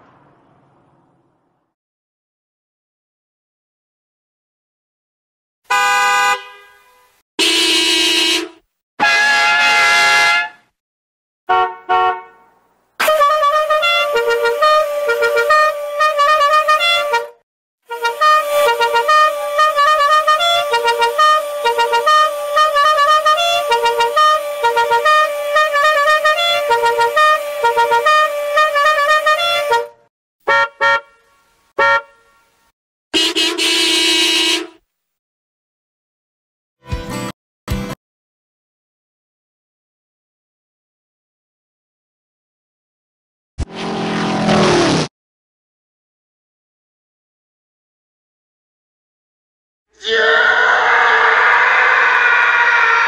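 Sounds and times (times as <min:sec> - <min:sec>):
loud horn honks: 0:05.7 - 0:10.7, 0:11.5 - 0:32.5, 0:33.2 - 0:34.8.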